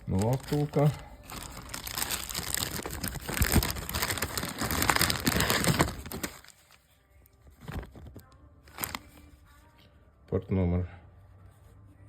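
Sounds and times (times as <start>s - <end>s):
plastic packaging crinkling: 0.0s - 6.9s, 7.6s - 9.3s.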